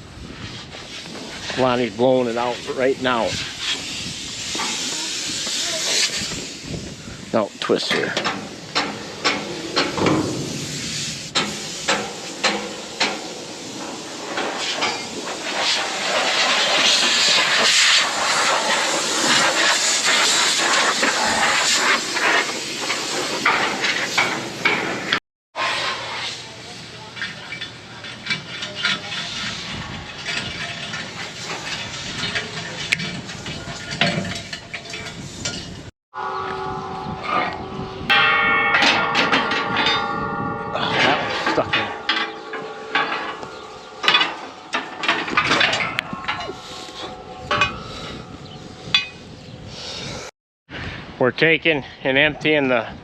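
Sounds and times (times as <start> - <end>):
air blowing hiss: 2.4 - 24.3
debris clicks and rattles: 27.2 - 35.9, 38.8 - 47.8.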